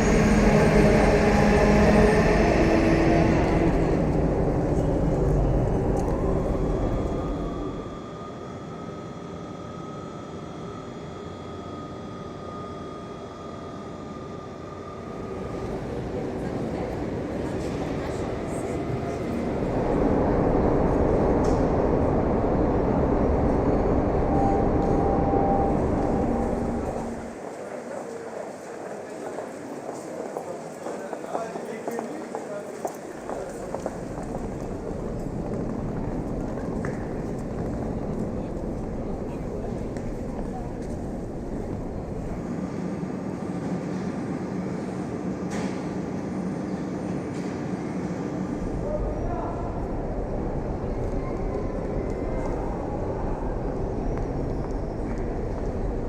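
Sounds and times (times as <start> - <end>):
train rumbling: 0.0 - 56.0
faint high tone: 24.2 - 27.3.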